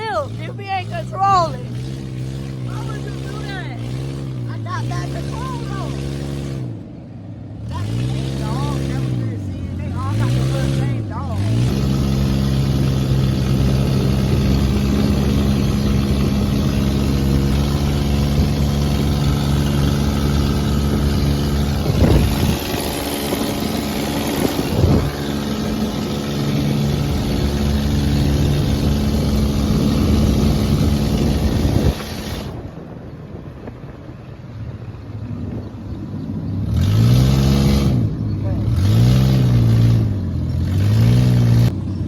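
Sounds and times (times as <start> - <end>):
dune buggy engine running: 0.0 - 42.0.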